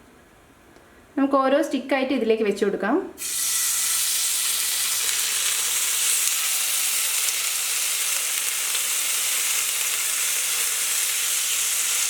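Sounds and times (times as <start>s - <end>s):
chicken skewers sizzling in oil: 3.2s - 12.0s.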